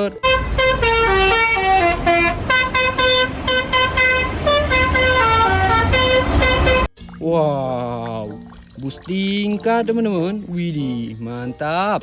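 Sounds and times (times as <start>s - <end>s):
bus horn playing a tune: 0.2s - 6.9s.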